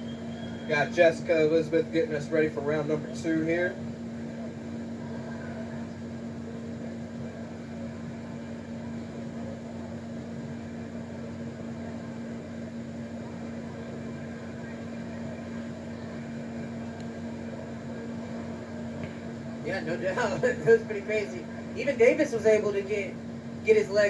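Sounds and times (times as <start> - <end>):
constant low hum: 0.0 - 24.0.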